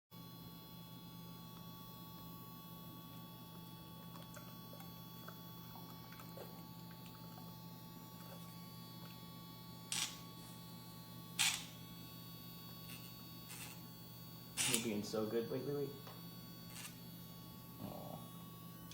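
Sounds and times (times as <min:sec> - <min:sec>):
nail grinder motor humming: 0:09.8 - 0:10.6, 0:11.4 - 0:11.9, 0:12.7 - 0:13.9, 0:14.5 - 0:15.4, 0:16.6 - 0:17.4.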